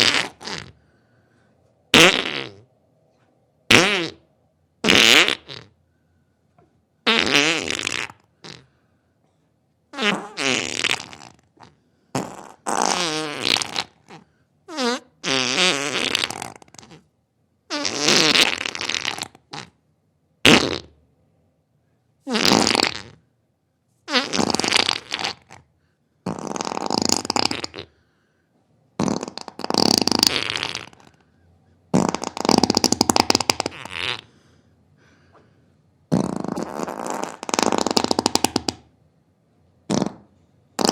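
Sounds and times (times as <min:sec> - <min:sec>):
farts: 0:00.0 - 0:00.8, 0:01.9 - 0:02.7, 0:03.7 - 0:05.8, 0:07.0 - 0:08.7, 0:09.9 - 0:17.1, 0:17.7 - 0:19.8, 0:20.4 - 0:21.0, 0:22.2 - 0:23.2, 0:24.1 - 0:28.0, 0:29.0 - 0:31.2, 0:31.9 - 0:34.3, 0:36.1 - 0:38.9, 0:39.8 - 0:40.9.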